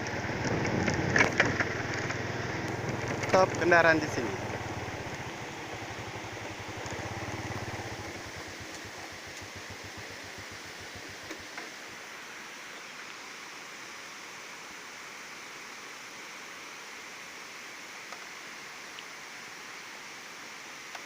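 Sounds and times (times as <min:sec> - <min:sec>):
waterfall rushing: 0:02.2 - 0:14.9.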